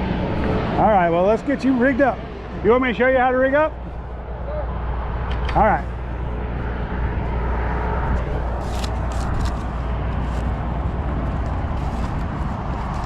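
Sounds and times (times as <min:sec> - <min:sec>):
outdoor rumble with hiss: 0:00.0 - 0:13.0.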